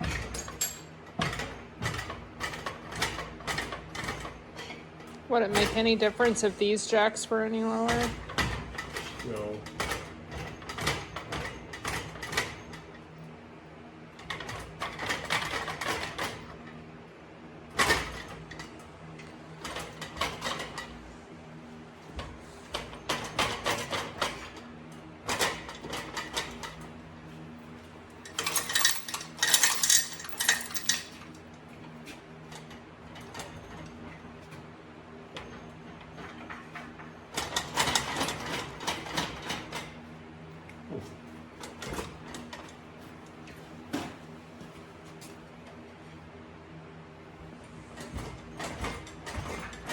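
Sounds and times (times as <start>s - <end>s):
metal tools clinking and clattering: 28.2s - 31.3s.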